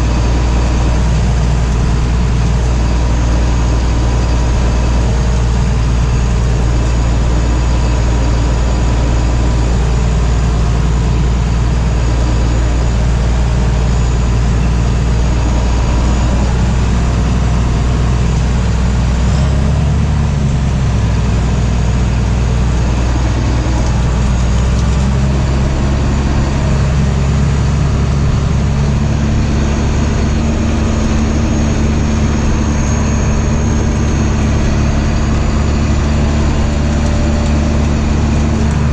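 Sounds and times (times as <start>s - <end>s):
heavy engine running: 0.0s - 38.9s.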